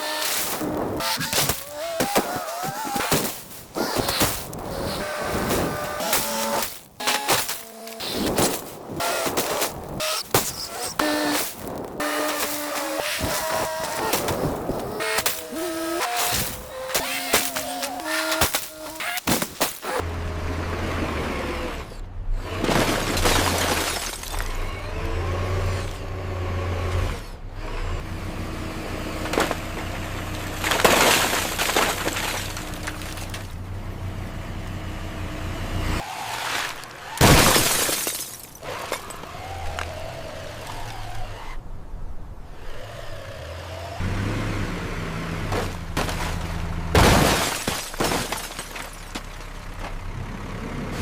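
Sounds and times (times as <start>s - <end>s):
cars crunching and shattering: 0.0s - 20.0s, 22.4s - 25.5s, 29.2s - 34.0s, 36.0s - 41.7s, 44.9s - 51.0s.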